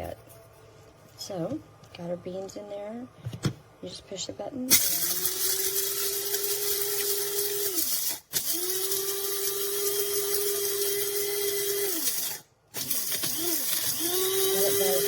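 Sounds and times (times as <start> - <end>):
coffee grinder motor whining: 4.7 - 15.0.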